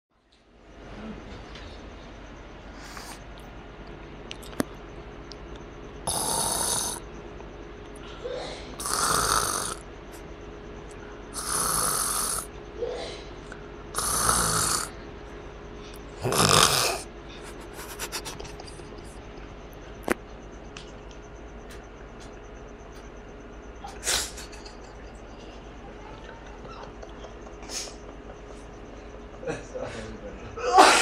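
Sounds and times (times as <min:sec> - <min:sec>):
loud rasping snores: 0:06.1 - 0:07.0, 0:08.8 - 0:09.8, 0:11.4 - 0:12.5, 0:14.0 - 0:14.9, 0:16.2 - 0:17.1.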